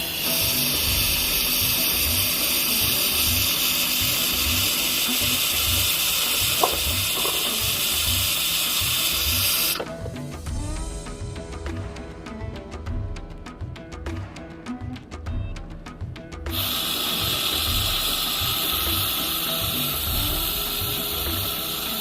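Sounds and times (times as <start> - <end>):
coffee machine hissing: 0.0 - 10.0, 16.5 - 22.0
background music with beat: 0.0 - 22.0.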